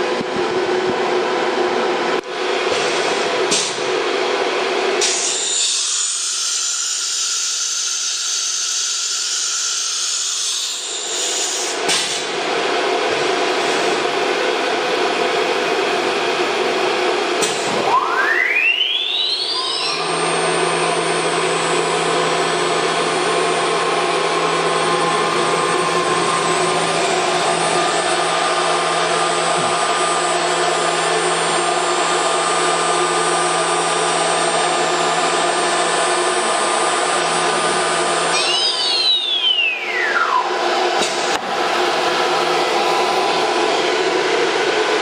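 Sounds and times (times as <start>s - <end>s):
cnc router humming: 0.0s - 45.0s
spindle whine rising in pitch: 12.4s - 45.0s.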